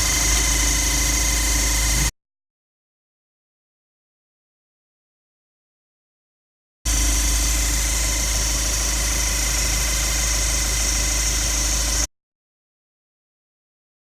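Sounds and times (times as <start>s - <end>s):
diesel engine running with whirring: 0.0s - 2.1s, 6.9s - 12.1s.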